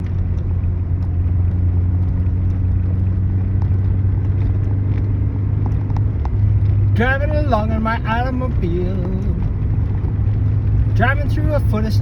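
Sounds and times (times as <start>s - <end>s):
low engine drone: 0.0s - 12.0s.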